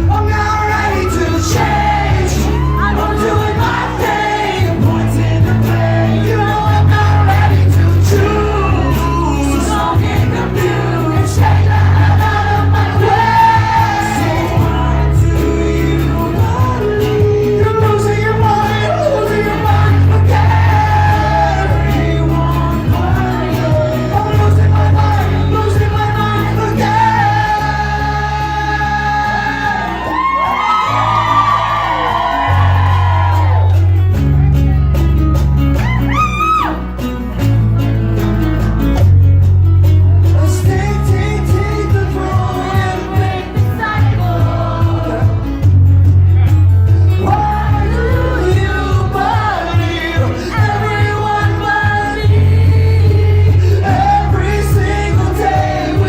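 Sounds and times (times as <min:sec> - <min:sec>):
crowd shouting along: 0:00.0 - 0:15.2, 0:26.8 - 0:34.0
person singing: 0:00.0 - 0:35.1, 0:40.3 - 0:56.0
live rock band playing: 0:00.0 - 0:56.0
repeating bass line: 0:00.0 - 0:56.0.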